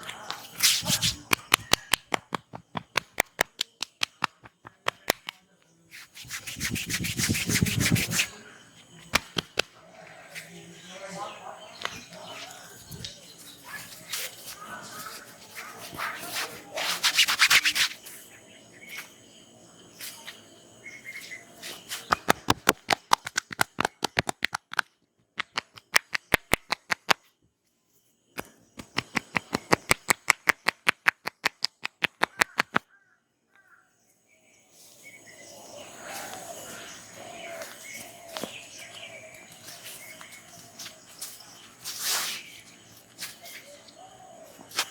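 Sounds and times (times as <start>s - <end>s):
rubbing over hair and skin: 0.0s - 9.7s, 13.6s - 18.0s, 21.6s - 24.6s, 39.7s - 43.7s
rapid hand tapping slaps: 0.6s - 5.4s, 9.1s - 9.7s, 22.1s - 27.2s, 28.8s - 32.8s.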